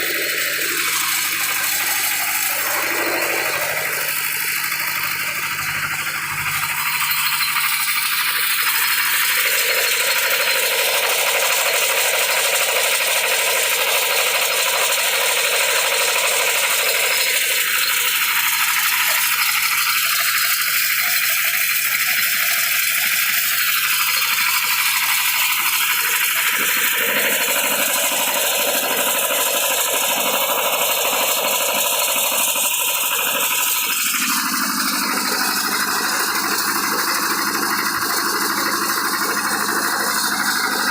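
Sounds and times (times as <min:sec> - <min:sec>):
washing machine rattling: 0:22.6 - 0:40.9.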